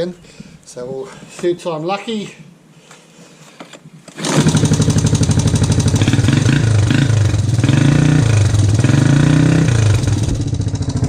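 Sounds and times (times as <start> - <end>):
pull starter: 4.1 - 6.3
engine revving: 4.2 - 11.0.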